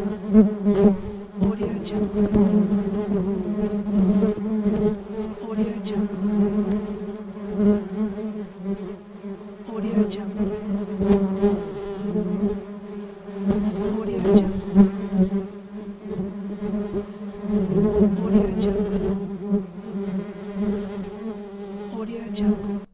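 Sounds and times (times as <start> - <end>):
bee buzzing in flight: 0.0 - 22.9.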